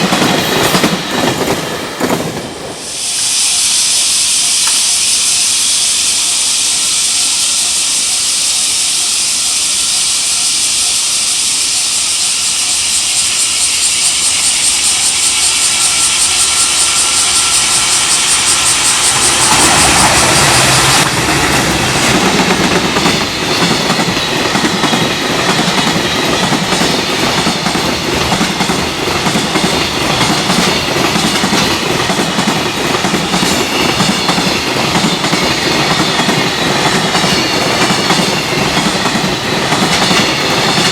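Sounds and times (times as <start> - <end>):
train wheels clattering: 0.0 - 3.3, 12.0 - 40.9
freight train rushing past: 0.0 - 40.9
steady high hiss: 2.7 - 34.8.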